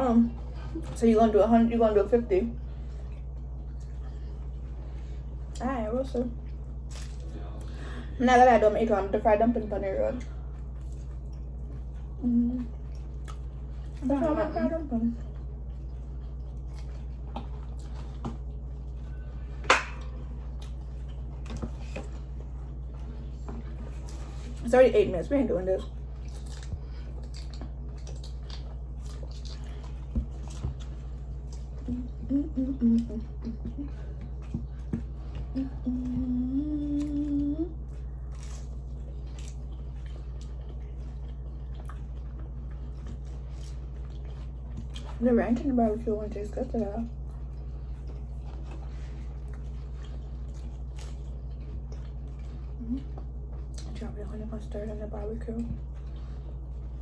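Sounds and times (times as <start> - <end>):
eating crunchy food: 0.0 - 57.0
low hum: 0.0 - 57.0
soft chewing: 0.0 - 57.0
person humming: 31.9 - 33.9, 35.5 - 37.8.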